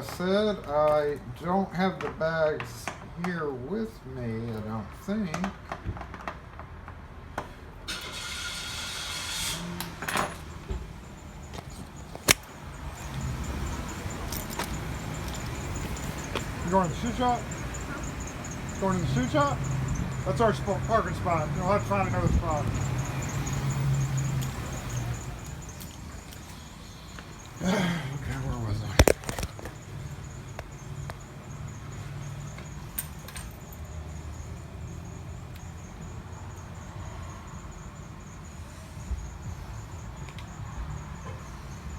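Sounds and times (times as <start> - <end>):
hiss: 7.9 - 9.8
car engine rumble: 7.9 - 38.4
small metal parts scraping: 11.5 - 17.3
faint clicks of metal parts: 14.1 - 17.4, 32.5 - 33.9.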